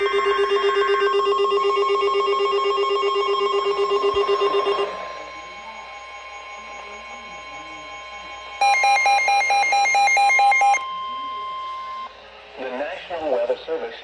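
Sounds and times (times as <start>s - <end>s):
pulsing alert tone: 0.0s - 10.8s
wavering tone: 0.0s - 12.1s.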